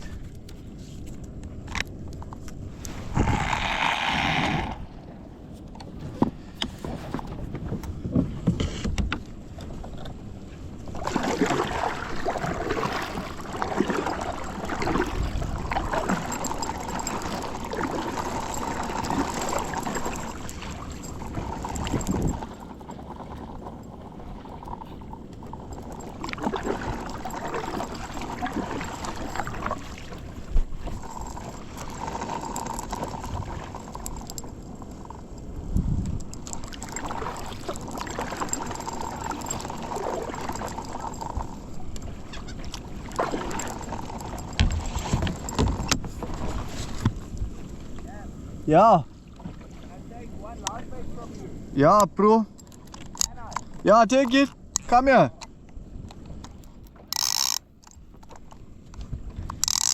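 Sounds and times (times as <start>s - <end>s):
water sloshing around hull: 0.0s - 59.9s
paddle splashes: 5.9s - 35.4s, 36.5s - 52.4s.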